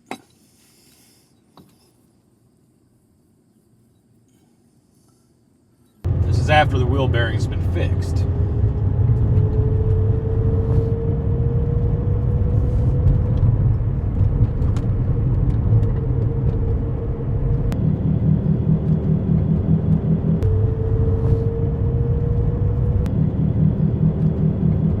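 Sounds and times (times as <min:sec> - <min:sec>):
road and tyre rumble: 0:06.0 - 0:25.0.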